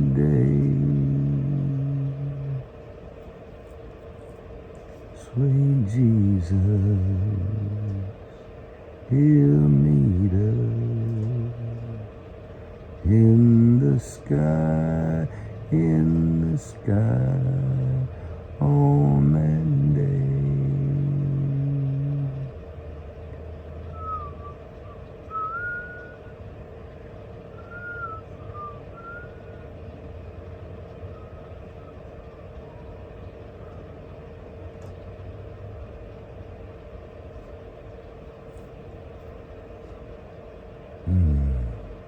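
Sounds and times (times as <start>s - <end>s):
steady tonal hum: 0.0s - 42.0s
soft whistled notes: 23.9s - 26.4s, 27.5s - 29.7s, 31.0s - 32.8s.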